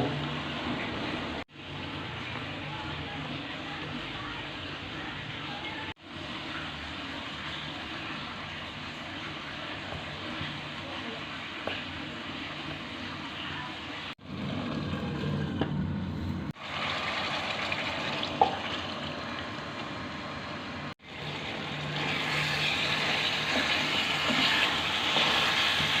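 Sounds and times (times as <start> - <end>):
meat sizzling in a pan: 21.0 - 26.0.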